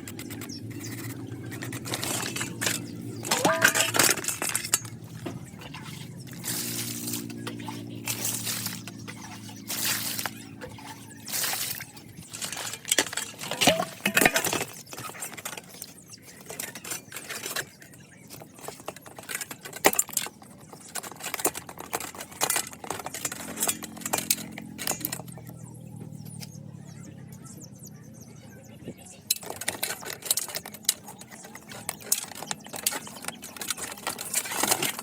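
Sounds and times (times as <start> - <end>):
keyboard parts clicking and clattering: 0.0 - 26.6, 29.1 - 35.0.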